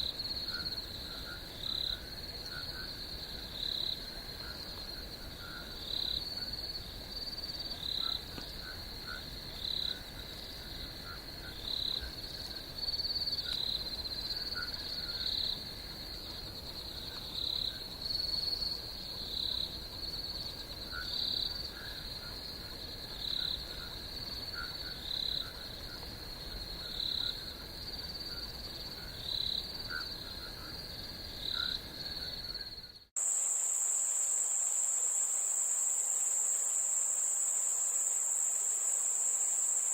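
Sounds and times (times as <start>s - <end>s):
insects trilling: 0.0s - 39.9s
high-pitched cricket buzz: 28.3s - 39.9s.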